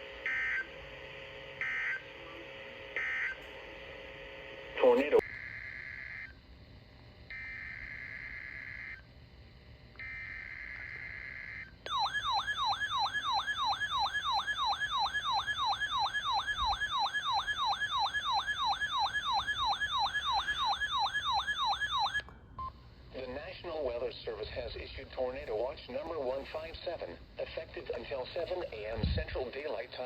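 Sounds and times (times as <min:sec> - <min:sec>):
siren-like alert tone: 0:10.2 - 0:22.2.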